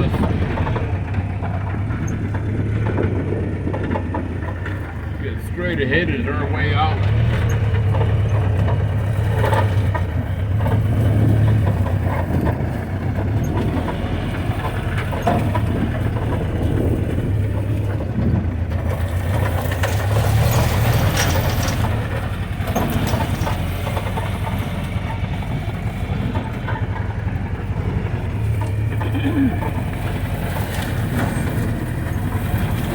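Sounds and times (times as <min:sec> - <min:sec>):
jeep engine running: 0:00.0 - 0:32.9.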